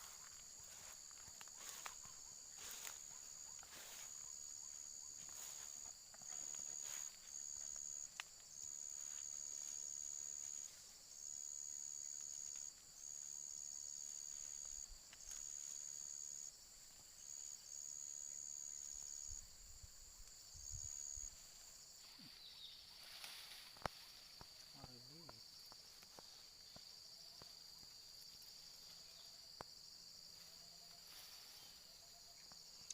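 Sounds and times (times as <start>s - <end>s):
insect drone: 0.0s - 32.9s
insects trilling: 0.0s - 32.9s.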